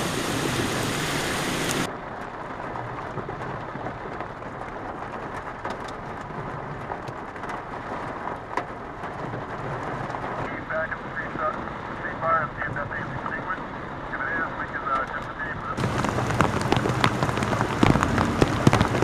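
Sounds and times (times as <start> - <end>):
heavy rain hiss: 0.0 - 1.9, 15.8 - 19.0
raindrops pattering on surface: 0.0 - 19.0.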